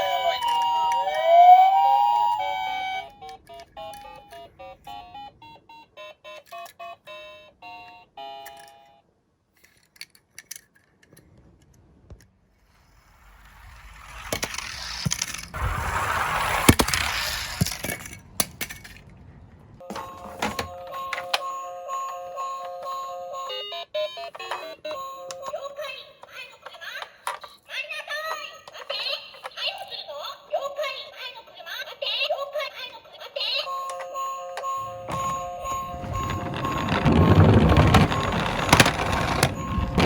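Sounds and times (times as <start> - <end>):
toy cars rolling rattle: 0.0 - 1.5, 9.6 - 11.3, 12.6 - 19.3, 34.9 - 40.0
toy siren wail: 0.0 - 4.7
electronic chime tones: 34.2 - 40.0
short beeping notes: 34.6 - 40.0.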